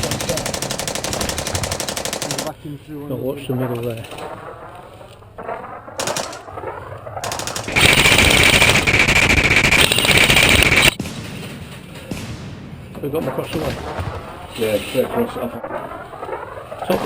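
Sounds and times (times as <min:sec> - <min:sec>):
airsoft gun firing bursts: 0:00.0 - 0:02.6, 0:06.0 - 0:06.6, 0:07.2 - 0:11.0.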